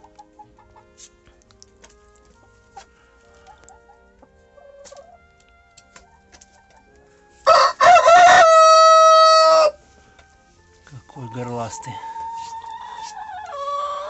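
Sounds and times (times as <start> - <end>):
faint hen clucking: 2.3 - 9.8, 11.2 - 14.0
rooster crowing: 7.4 - 9.8, 11.8 - 14.0.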